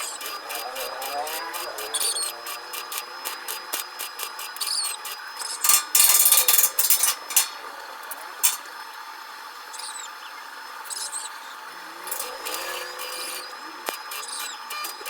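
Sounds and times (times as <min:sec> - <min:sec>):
steady background hum: 0:00.0 - 0:15.0
high squeaky chirps: 0:04.6 - 0:07.6, 0:14.1 - 0:15.0
tool scraping and knocking: 0:05.6 - 0:07.6, 0:08.4 - 0:08.7.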